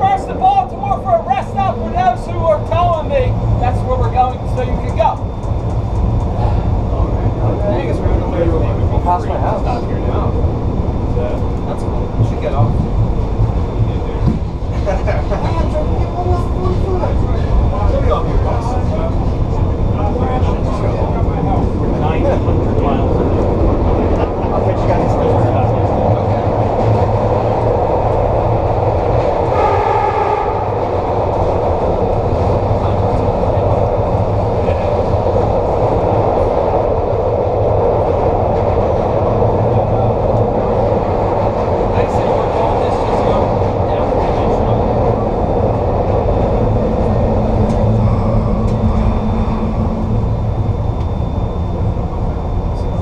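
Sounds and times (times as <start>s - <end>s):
light rail running rumble: 0.0s - 53.0s
low motor hum: 43.3s - 53.0s
brief pitched tone: 47.8s - 53.0s.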